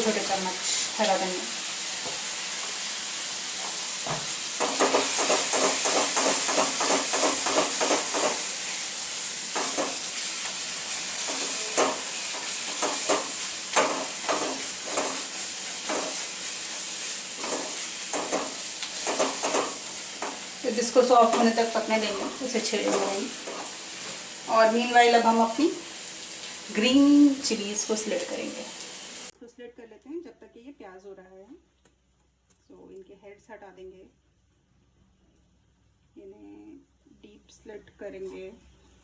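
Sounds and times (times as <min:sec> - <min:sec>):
onion frying in hot oil: 0:00.0 - 0:30.3
spatula scraping a pan: 0:11.2 - 0:20.6, 0:21.2 - 0:24.2.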